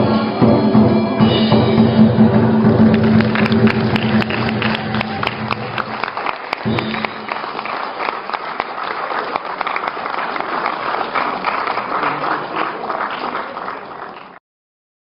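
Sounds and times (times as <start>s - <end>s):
audience applauding: 2.6s - 14.4s.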